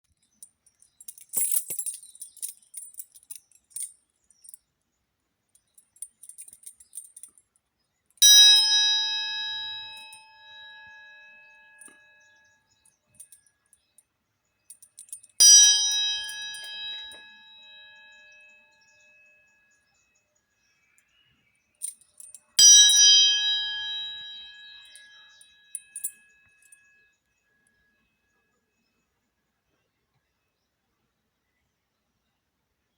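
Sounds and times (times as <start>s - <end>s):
light metallic clinks: 0.1s - 4.7s, 5.4s - 19.5s, 20.9s - 27.9s
struck metal bell ringing: 8.2s - 12.0s, 15.4s - 18.3s, 22.6s - 26.2s.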